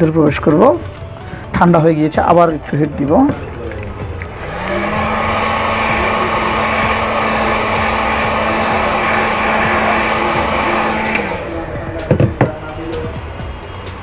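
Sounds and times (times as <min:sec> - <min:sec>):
hot air blower running: 0:04.3 - 0:13.5.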